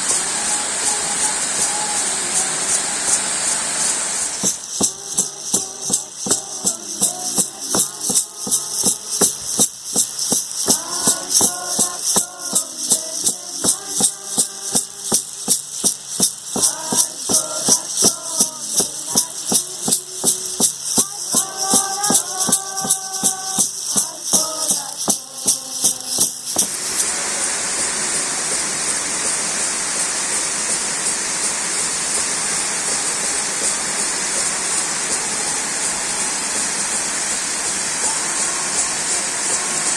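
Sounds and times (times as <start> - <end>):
waterfall rushing: 0.0 - 21.4, 26.3 - 30.3
hand rattle shaking: 0.0 - 27.5, 28.9 - 39.9
person singing: 4.7 - 26.7, 37.9 - 39.9.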